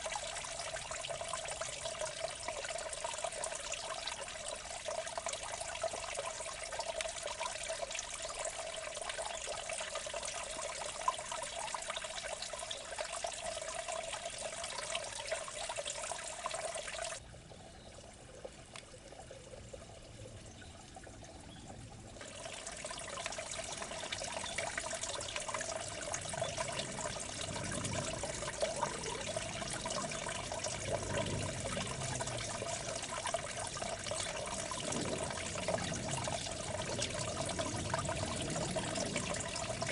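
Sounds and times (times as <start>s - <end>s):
water trickling in a ditch: 0.0s - 39.9s.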